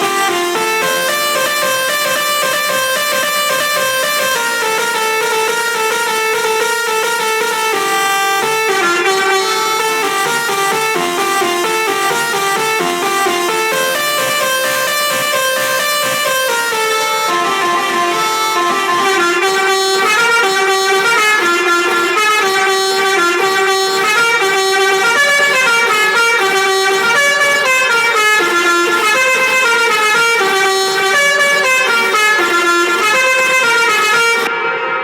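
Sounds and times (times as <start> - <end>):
multi-tone musical vehicle horn: 0.0 - 35.0.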